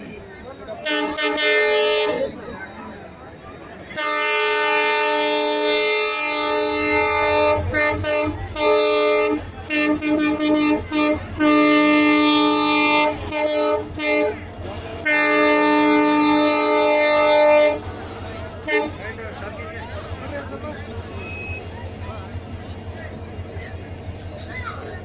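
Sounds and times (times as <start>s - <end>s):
train horn blasts and toots: 0.8s - 2.3s, 3.9s - 17.9s, 18.6s - 19.0s.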